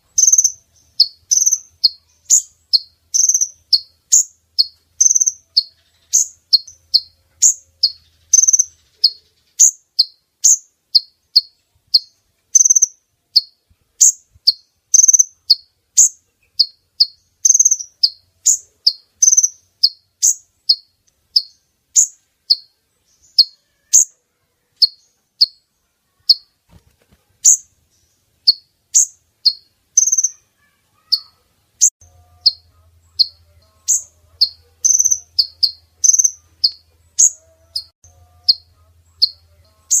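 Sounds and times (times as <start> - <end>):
bird high chip notes: 0.2 - 22.7, 32.0 - 40.0.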